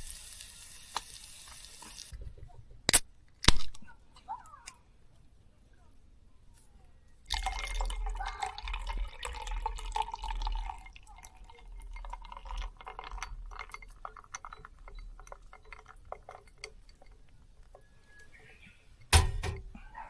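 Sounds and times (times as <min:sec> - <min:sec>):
liquid pouring into a container: 0:07.3 - 0:17.3
scattered drips: 0:07.3 - 0:18.3
small clinks: 0:11.5 - 0:18.4.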